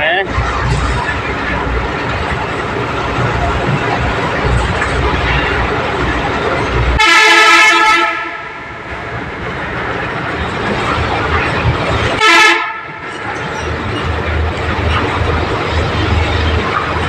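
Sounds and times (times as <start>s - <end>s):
traffic rumble in tunnel: 0.0s - 17.0s
vehicle horn honking: 7.0s - 8.6s, 12.2s - 13.0s.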